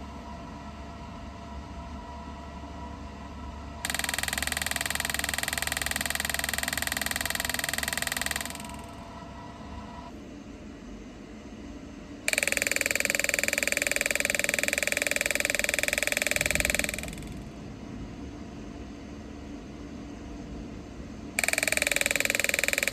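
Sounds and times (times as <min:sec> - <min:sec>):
low machine hum: 0:00.0 - 0:22.9
treatment machine firing pulses: 0:03.8 - 0:09.4, 0:12.3 - 0:17.6, 0:21.4 - 0:22.9.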